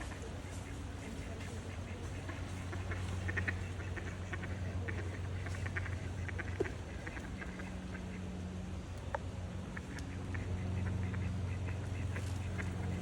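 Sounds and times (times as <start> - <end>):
birds giving rapid calls: 0.0 - 8.2
steady low hum: 0.0 - 13.0.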